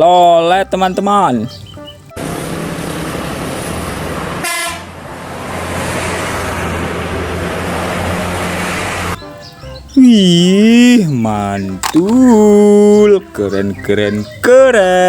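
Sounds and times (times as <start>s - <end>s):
bus engine running: 1.6s - 15.0s
horn toot: 4.4s - 5.0s.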